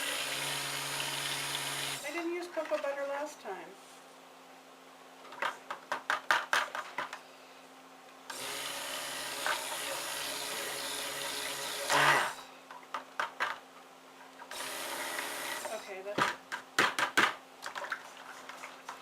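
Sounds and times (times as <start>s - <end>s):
stick blender running: 0.0s - 2.1s, 8.3s - 12.5s, 14.5s - 15.8s.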